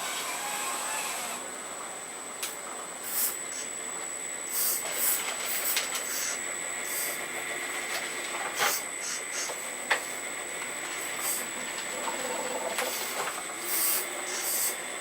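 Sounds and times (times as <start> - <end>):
hydraulic pump whining: 0.0 - 1.4.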